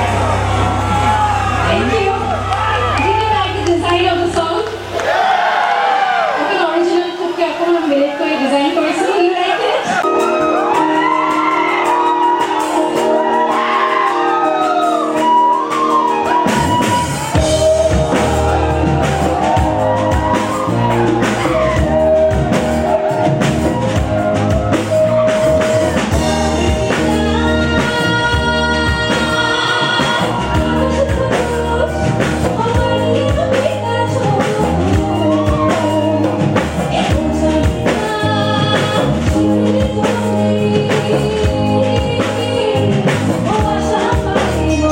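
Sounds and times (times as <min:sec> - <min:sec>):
drums and bass beat: 0:00.0 - 0:05.1, 0:10.0 - 0:44.9
person singing: 0:26.4 - 0:44.9.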